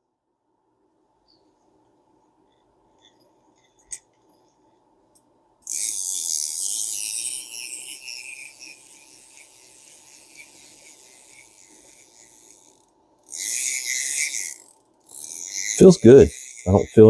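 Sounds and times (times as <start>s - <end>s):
reel clicker buzzing rattle: 5.6s - 17.0s
spinning reel whirring: 5.6s - 17.0s.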